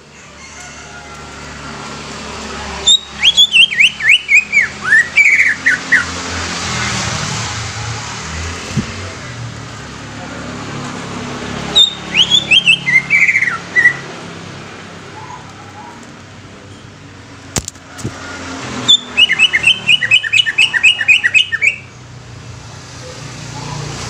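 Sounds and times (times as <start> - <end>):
bird whistling and chirping: 2.8 - 6.1, 11.8 - 14.0, 18.9 - 21.9.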